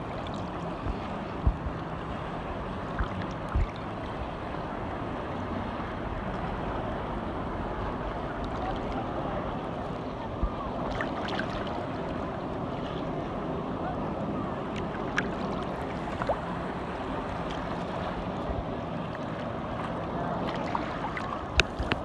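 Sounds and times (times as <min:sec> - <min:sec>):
wind buffeting microphone: 0:00.0 - 0:12.4
water rushing and splashing: 0:00.0 - 0:22.0
watercraft engine running: 0:00.0 - 0:22.0.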